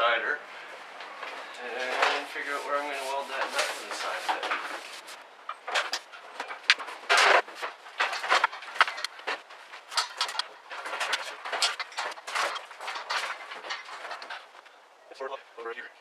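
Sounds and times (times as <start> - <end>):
welder scraping across floor: 1.8 - 5.2.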